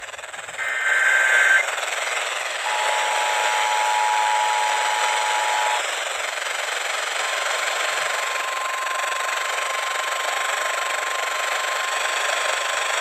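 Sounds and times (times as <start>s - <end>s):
radio static hiss: 0.6s - 1.8s
two-tone attention signal: 0.6s - 1.8s, 2.6s - 5.8s
buzzy data warble: 0.6s - 5.8s.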